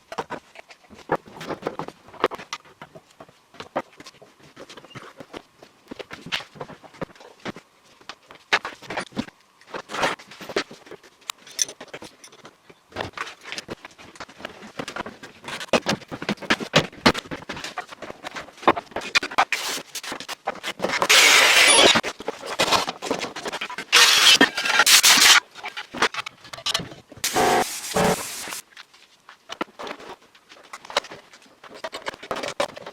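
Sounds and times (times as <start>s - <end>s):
loud hissing bursts: 24.0s - 25.4s, 27.2s - 28.6s.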